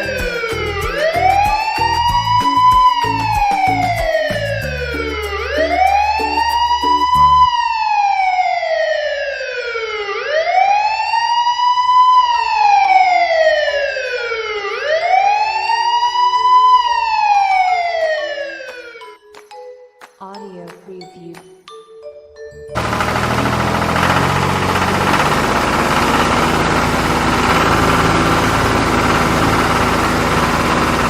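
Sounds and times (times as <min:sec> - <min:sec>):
electronic wail siren: 0:00.0 - 0:19.0.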